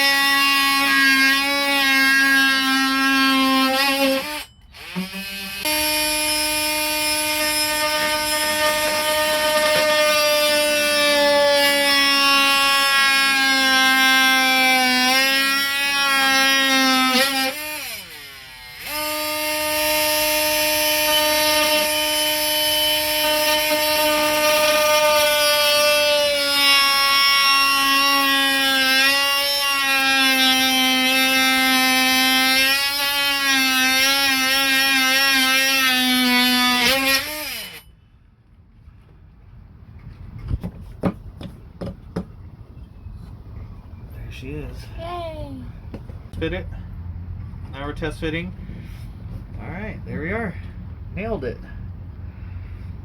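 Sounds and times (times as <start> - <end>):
power tool whining: 0.0 - 38.0.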